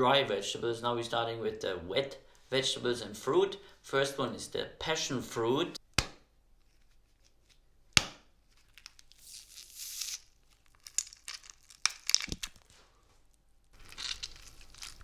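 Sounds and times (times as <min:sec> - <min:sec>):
sharp hit on fruit: 0:06.0 - 0:06.2
wet tearing squish: 0:07.2 - 0:12.8, 0:13.8 - 0:15.0
cracks and knocks: 0:10.8 - 0:12.7.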